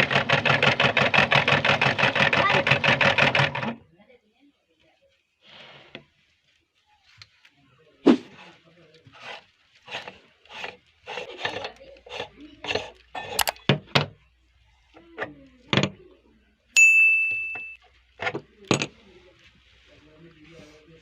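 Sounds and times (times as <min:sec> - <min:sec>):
radish crunching in meat grinder: 0:00.0 - 0:03.7
loud bright ding: 0:16.8 - 0:17.8.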